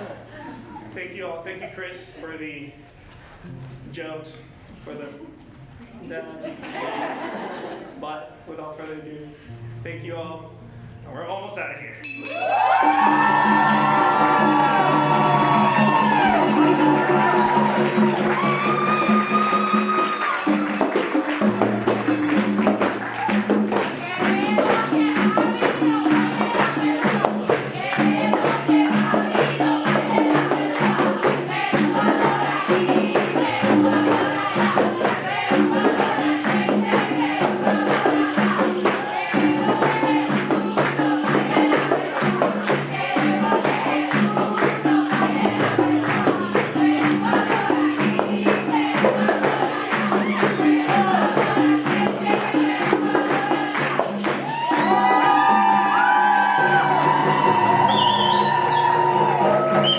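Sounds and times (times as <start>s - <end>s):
tambourine-like beat: 12.0s - 59.9s
upbeat song with singing: 12.2s - 59.9s.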